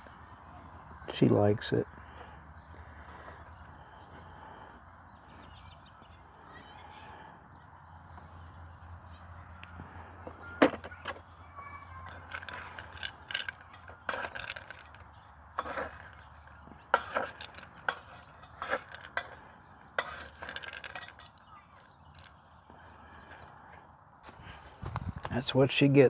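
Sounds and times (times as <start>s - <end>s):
bowl clinking and clattering: 12.0s - 21.4s.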